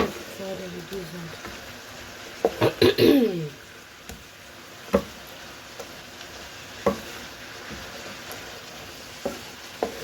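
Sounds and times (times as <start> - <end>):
food sizzling in frying pan: 0.0 - 10.0
utensil knocking on pan: 2.4 - 2.7, 4.9 - 5.2, 6.8 - 7.1.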